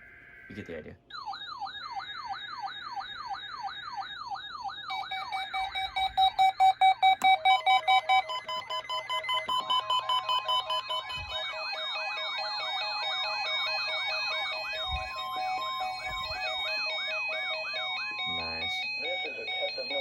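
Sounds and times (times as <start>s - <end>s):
weather alert radio siren warble: 1.2s - 20.0s
alarm beeps: 4.9s - 20.0s.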